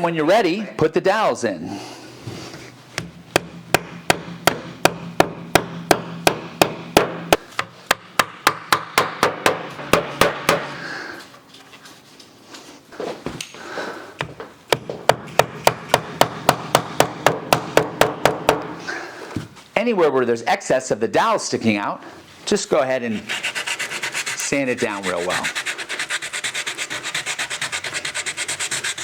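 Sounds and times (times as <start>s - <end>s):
rubber mallet tapping wood: 3.0s - 10.7s, 14.2s - 18.8s.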